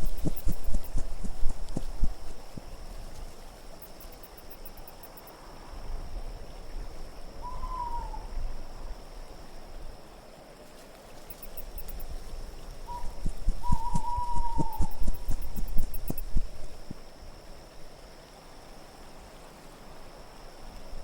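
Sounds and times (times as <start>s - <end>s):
soft low thumps: 0.0s - 2.8s, 13.0s - 17.0s
low wind: 0.0s - 21.0s
owl hooting: 7.4s - 8.3s, 12.8s - 16.9s.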